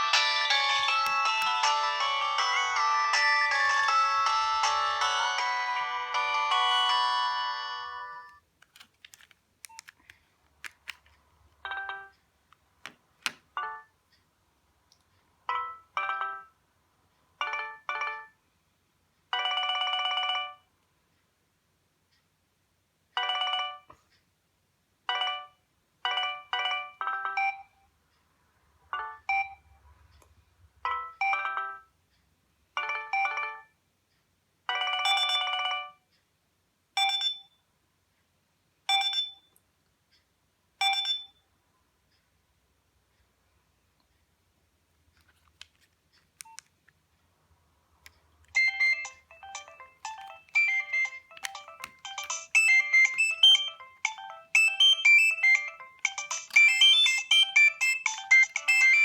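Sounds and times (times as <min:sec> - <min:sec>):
phone ringtone chimes: 0:00.0 - 0:08.3, 0:34.7 - 0:36.0, 0:48.5 - 0:59.0
sharp clicks: 0:08.6 - 0:11.1, 0:48.1 - 0:54.2.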